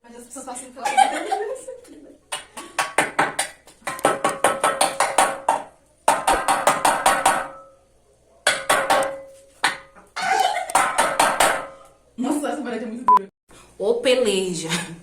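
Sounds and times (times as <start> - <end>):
hammer pounding nail into wall: 2.6 - 7.7, 8.5 - 9.9, 10.7 - 11.7.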